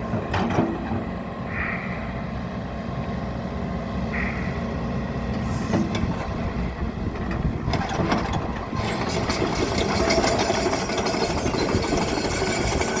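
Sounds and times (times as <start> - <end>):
excavator diesel engine running: 0.0 - 13.0
clanks and rattles: 5.7 - 13.0.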